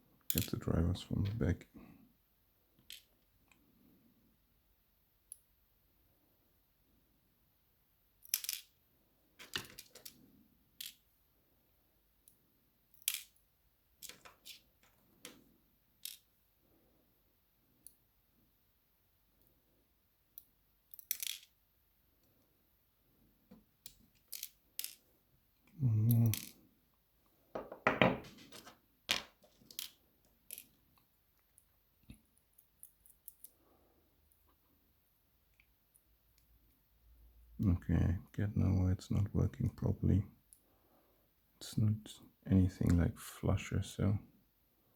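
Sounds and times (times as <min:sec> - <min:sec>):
faint metallic clicks of lock parts: 0:29.6 - 0:33.6.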